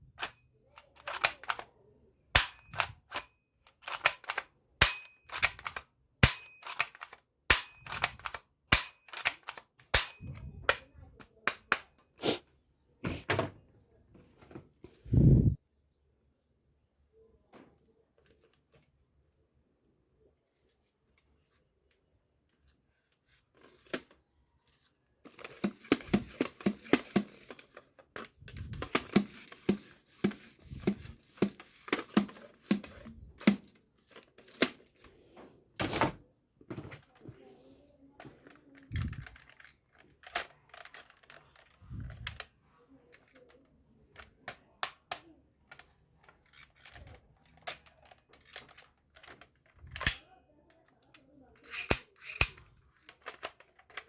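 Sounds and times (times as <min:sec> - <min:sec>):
plastic toy gun clicks: 0:00.2 - 0:01.7, 0:02.4 - 0:12.0, 0:25.3 - 0:34.8, 0:38.2 - 0:42.5, 0:43.1 - 0:54.0.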